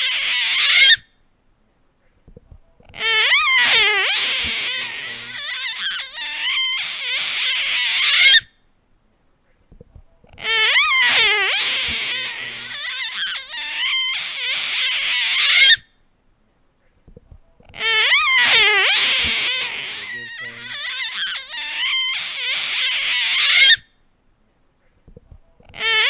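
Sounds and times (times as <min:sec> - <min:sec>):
baby crying: 0:03.0 - 0:08.2, 0:10.4 - 0:15.6, 0:17.8 - 0:23.6.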